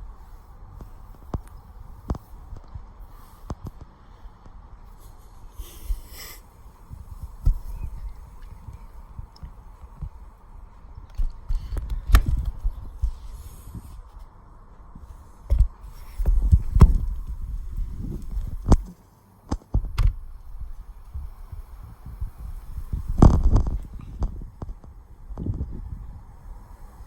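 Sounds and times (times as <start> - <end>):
wind buffeting microphone: 0.0 - 18.9, 19.7 - 27.0
sharp clicks and knocks: 18.1 - 20.3.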